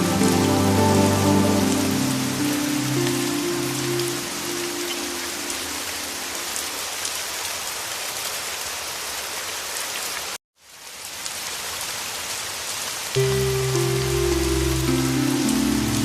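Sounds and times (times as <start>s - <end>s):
soft music with low held notes: 0.0s - 6.3s, 13.2s - 16.0s
heavy rain hiss: 0.0s - 16.0s.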